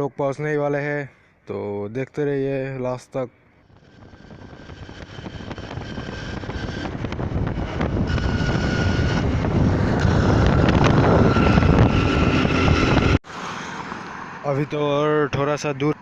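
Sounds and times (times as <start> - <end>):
vehicle engine and road rumble: 3.5 - 16.0
wind on microphone: 3.7 - 13.2.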